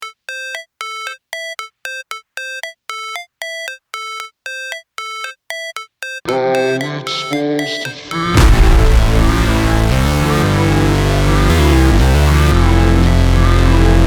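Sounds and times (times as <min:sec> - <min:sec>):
bell-like synthesizer notes: 0:06.5 - 0:14.0.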